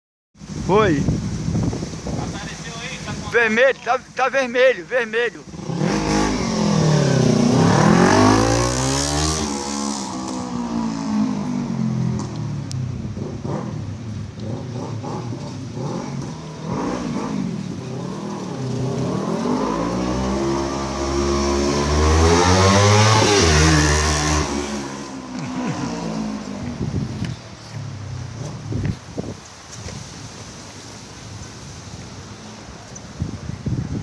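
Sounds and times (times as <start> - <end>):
motorcycle engine revving: 5.4 - 29.0.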